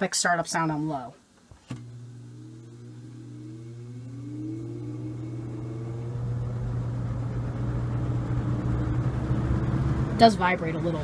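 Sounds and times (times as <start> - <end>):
box fan motor hum: 1.5 - 11.0.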